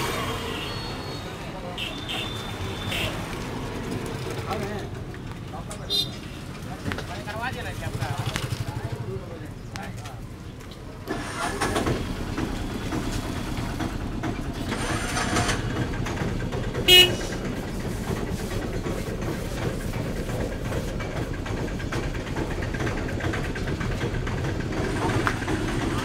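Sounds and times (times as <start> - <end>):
traffic noise: 0.0 - 26.0
vehicle horn toot: 1.8 - 3.2, 16.9 - 17.4.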